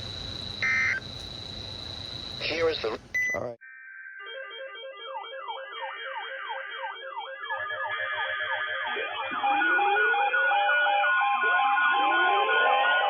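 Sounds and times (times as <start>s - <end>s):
rising siren wails: 0.0s - 2.8s
falling electronic yelp siren: 0.0s - 3.0s, 4.0s - 13.0s
rapid two-pitch alternating beep: 0.6s - 1.0s.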